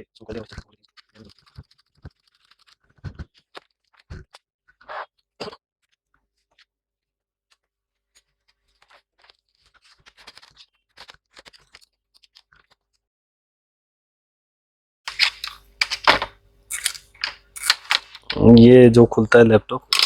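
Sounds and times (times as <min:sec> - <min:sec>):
faint plastic scratches: 0:00.5 - 0:04.4, 0:15.1 - 0:18.6
sharp plastic clicks and knocks: 0:15.1 - 0:18.6.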